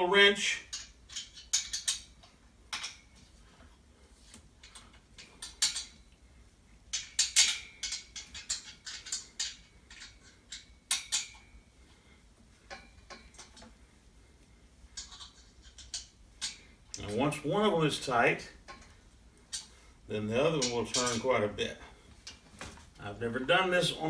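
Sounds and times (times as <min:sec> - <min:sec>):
wrench clinking on metal bolts: 0:00.6 - 0:03.1, 0:04.6 - 0:06.1, 0:06.9 - 0:11.5, 0:15.0 - 0:17.2, 0:20.4 - 0:21.4.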